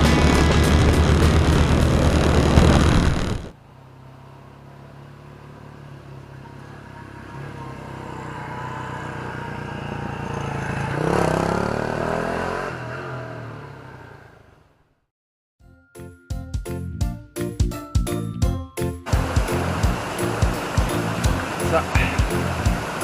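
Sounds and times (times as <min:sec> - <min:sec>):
motorcycle engine passing: 0:05.0 - 0:14.6.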